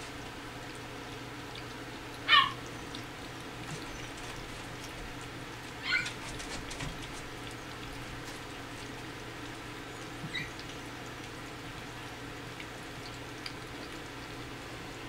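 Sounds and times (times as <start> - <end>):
puppies lapping food: 0.0 - 15.0
puppy squeaks: 5.8 - 6.2, 10.3 - 10.6.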